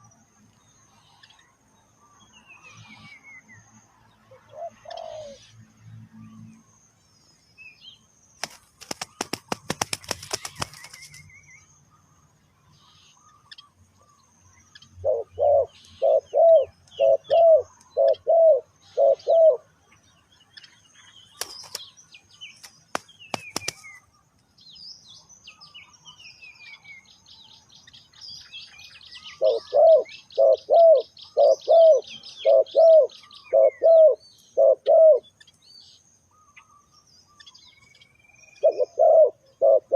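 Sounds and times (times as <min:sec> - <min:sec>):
small birds chirping: 0:00.0 - 0:39.9
doves cooing: 0:04.5 - 0:05.4, 0:15.0 - 0:19.7, 0:29.3 - 0:35.2, 0:38.6 - 0:39.9
wings flapping: 0:08.4 - 0:11.3, 0:21.4 - 0:21.9, 0:22.6 - 0:24.0.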